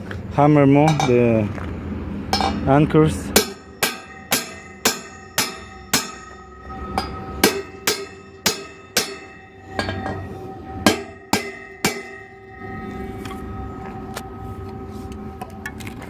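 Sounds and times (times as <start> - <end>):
hammer striking steel anchors: 3.3 - 12.6.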